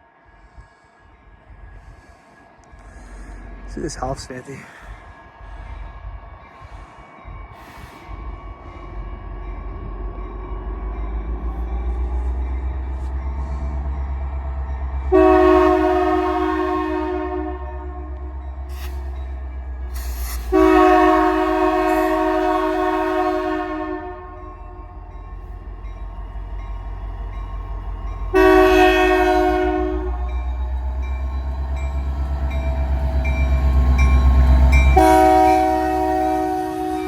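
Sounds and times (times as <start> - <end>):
locomotive diesel engine rumbling: 1.4 - 37.0
locomotive air horn blasts: 15.1 - 18.3, 20.2 - 24.9, 28.3 - 30.4, 34.9 - 37.0.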